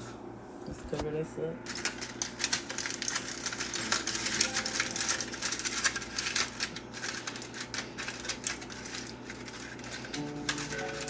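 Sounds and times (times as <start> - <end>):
aluminium foil crinkling: 1.6 - 11.0.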